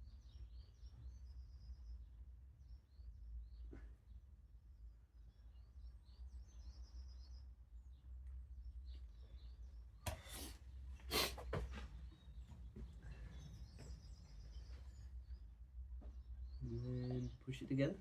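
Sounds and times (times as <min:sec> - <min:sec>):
birds chirping: 0:09.0 - 0:18.0.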